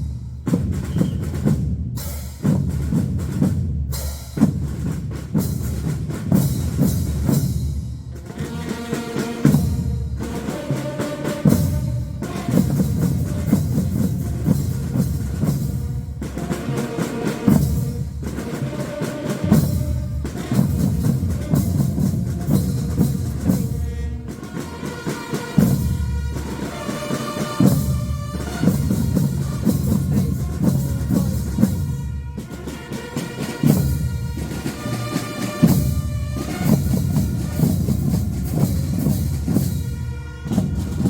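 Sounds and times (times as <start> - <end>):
bass and snare drums: 0.0 - 41.0
marching band playing: 0.0 - 41.0
horn melody: 8.2 - 41.0.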